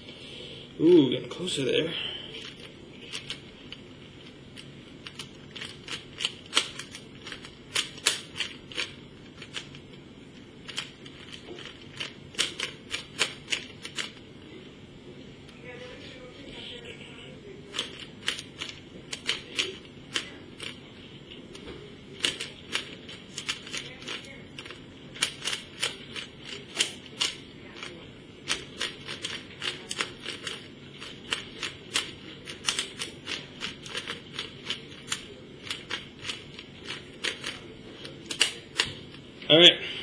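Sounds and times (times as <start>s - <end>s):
puzzle cube plastic clicks: 4.5s - 9.8s, 10.6s - 14.2s, 17.7s - 20.8s, 22.2s - 38.9s.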